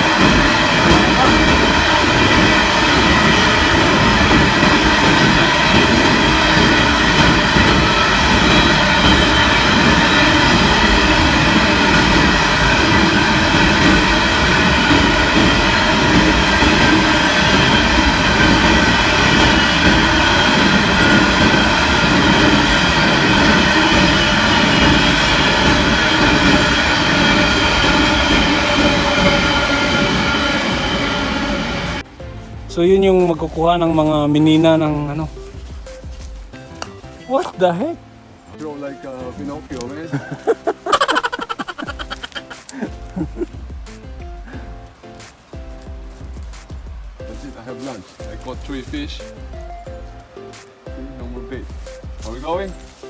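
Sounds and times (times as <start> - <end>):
high ringing whine: 0.0 - 36.4
steel wheels rumbling on rail: 0.0 - 38.0, 39.0 - 53.0.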